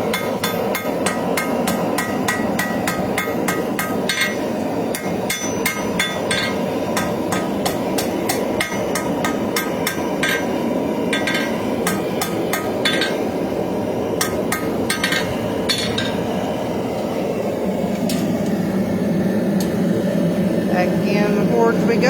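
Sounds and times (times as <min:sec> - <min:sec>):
hammer ringing on anvil: 0:00.1 - 0:13.3, 0:14.2 - 0:16.2.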